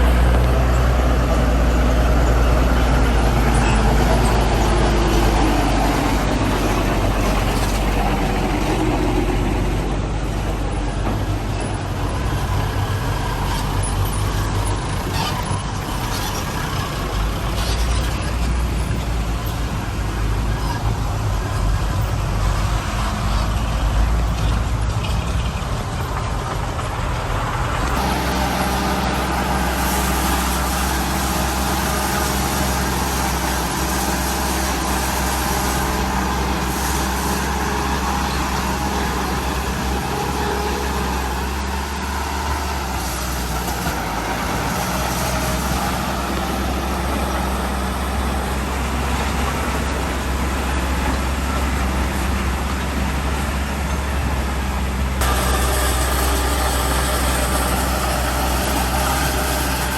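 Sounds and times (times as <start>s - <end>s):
heavy diesel engines droning: 0.0s - 59.9s.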